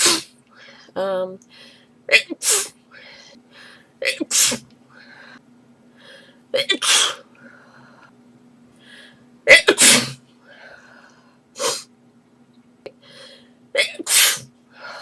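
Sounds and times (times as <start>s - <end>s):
girl sneezing: 0.0s - 0.4s, 2.1s - 2.8s, 4.1s - 4.6s, 6.6s - 7.2s, 9.5s - 10.2s, 13.8s - 14.5s
short breaths: 8.8s - 9.3s, 13.0s - 13.6s.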